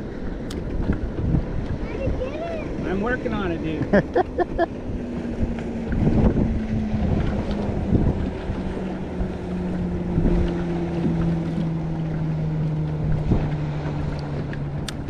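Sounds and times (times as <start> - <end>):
boat motor humming: 0.0 - 15.0
wind buffeting microphone: 0.0 - 15.0.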